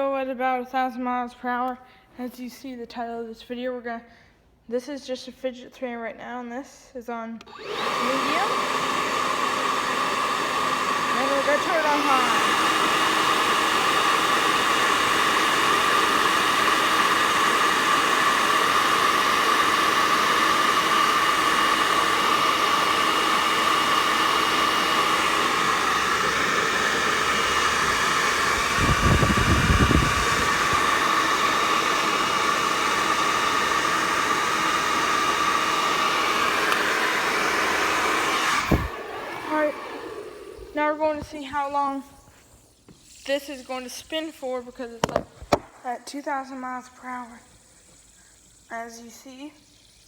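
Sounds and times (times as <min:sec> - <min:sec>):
hair dryer running: 0:07.4 - 0:42.5, 0:45.0 - 0:45.8.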